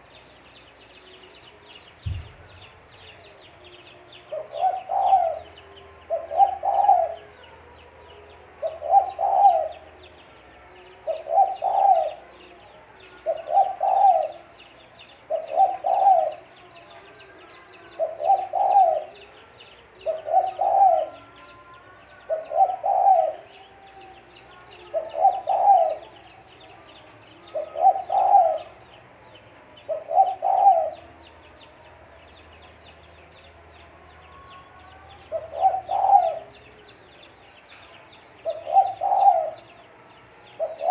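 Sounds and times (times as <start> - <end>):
faint small birds chirping: 0.0 - 40.9
dove cooing: 4.2 - 7.4, 8.6 - 9.9, 11.0 - 12.4, 13.2 - 14.6, 15.2 - 16.5, 17.9 - 19.4, 20.0 - 26.4, 27.5 - 28.9, 29.8 - 31.2, 35.2 - 36.8, 38.4 - 39.8, 40.6 - 40.9.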